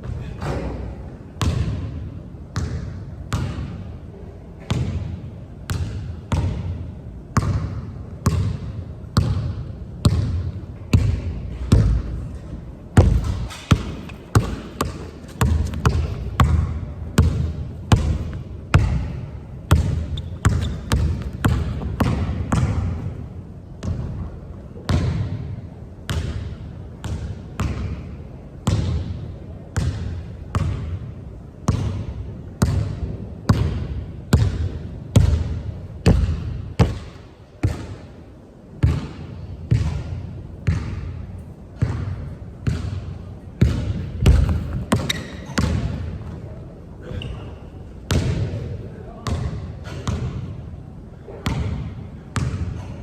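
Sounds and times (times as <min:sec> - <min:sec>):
basketball bouncing on hard court: 0:01.4 - 0:01.9, 0:05.7 - 0:06.7, 0:07.4 - 0:23.2, 0:31.7 - 0:38.1, 0:38.8 - 0:41.2, 0:41.8 - 0:46.5, 0:48.1 - 0:48.6, 0:49.2 - 0:50.5, 0:51.4 - 0:52.9.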